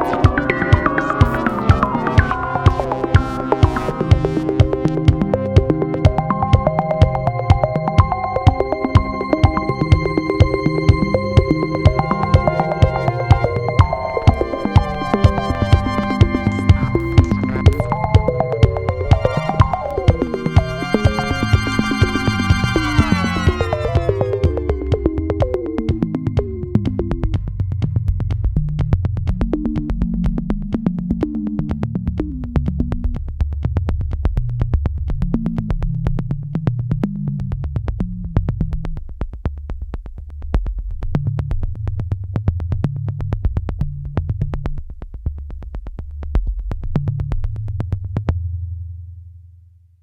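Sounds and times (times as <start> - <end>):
synthesizer bass line: 0.0 - 27.3
ticking electronic beat: 0.0 - 32.9.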